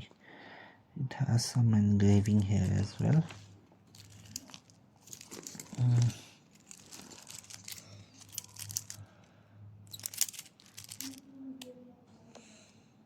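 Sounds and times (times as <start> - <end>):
plastic packaging crinkling: 2.3 - 9.1, 9.9 - 11.2.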